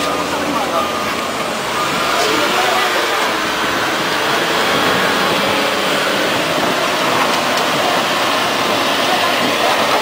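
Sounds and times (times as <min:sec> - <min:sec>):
bulldozer running: 0:00.0 - 0:10.0.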